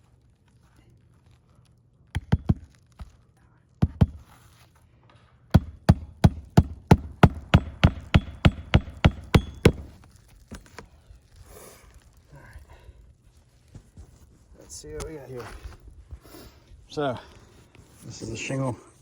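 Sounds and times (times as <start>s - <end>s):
hammer striking roof shingles: 5.6s - 10.0s.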